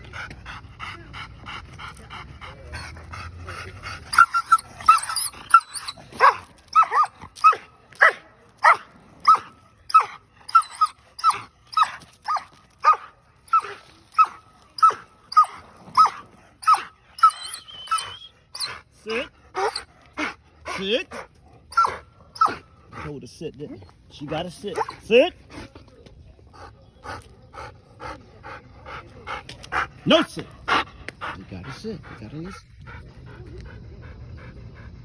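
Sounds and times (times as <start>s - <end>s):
dog barking: 6.2s - 10.1s.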